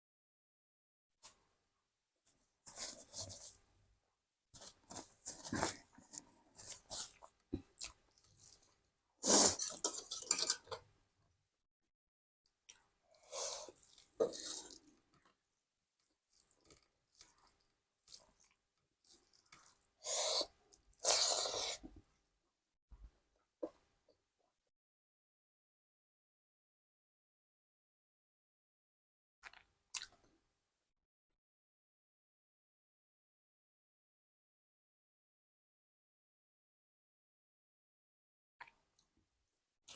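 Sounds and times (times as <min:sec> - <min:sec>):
chewing and crunching: 0:16.3 - 0:20.0.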